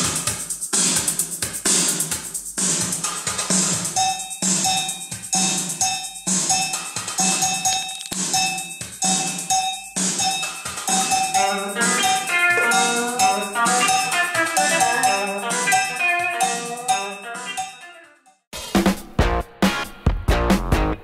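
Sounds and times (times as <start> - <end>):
electronic drum beat: 0.0 - 17.6
bright synth melody: 10.9 - 18.3.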